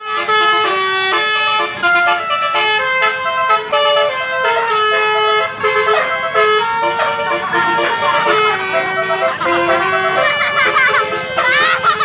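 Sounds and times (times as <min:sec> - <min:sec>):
musical air horn playing a tune: 0:00.0 - 0:12.0.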